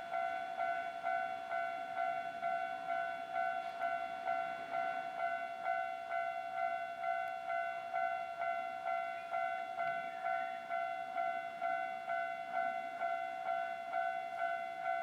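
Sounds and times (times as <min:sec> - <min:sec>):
level crossing warning bell: 0:00.0 - 0:15.0.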